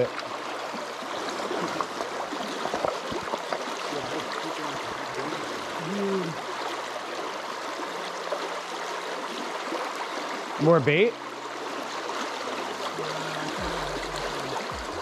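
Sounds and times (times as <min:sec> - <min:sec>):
creek water over rocks: 0:00.0 - 0:15.0
person humming: 0:03.9 - 0:06.5, 0:13.0 - 0:15.0.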